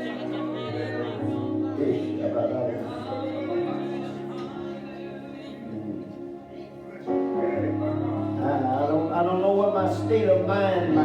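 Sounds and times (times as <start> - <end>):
soft church music with sustained chords: 0.0 - 11.0.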